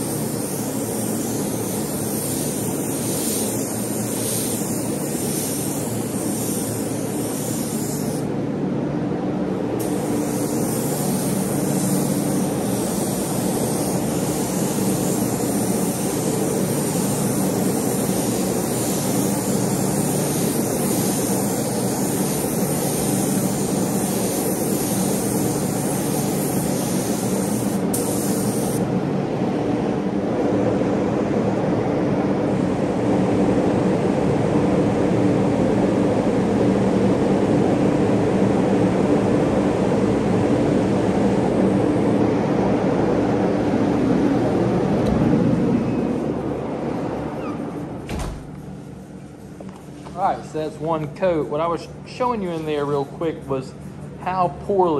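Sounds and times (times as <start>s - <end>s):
paint spray gun hissing: 0.0s - 8.3s, 9.8s - 28.8s
compressed air line humming: 0.0s - 29.4s.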